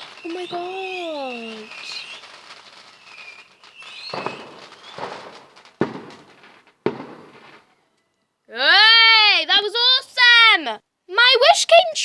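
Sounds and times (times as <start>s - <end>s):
fireworks exploding: 0.0s - 7.9s.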